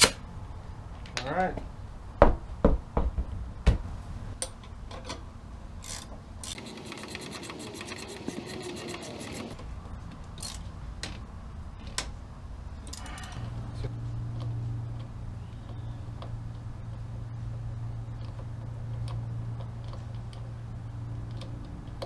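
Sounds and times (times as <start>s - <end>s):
air compressor hum: 6.5s - 9.6s
rapid clicking: 6.5s - 9.6s.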